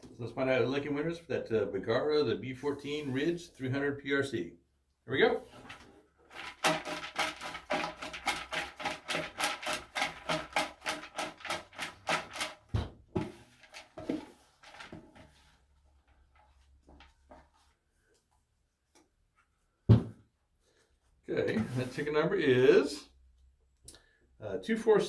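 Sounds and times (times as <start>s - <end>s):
faint handling sounds: 20.5s - 22.3s.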